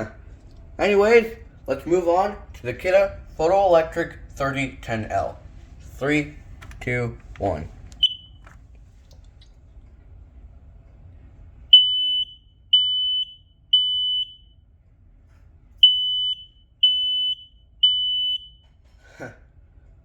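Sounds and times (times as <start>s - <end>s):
smoke alarm high beeps: 8.0s - 8.4s, 11.7s - 14.6s, 15.8s - 18.8s
smoke alarm chirp: 8.0s - 8.5s, 11.7s - 14.6s, 15.8s - 18.8s.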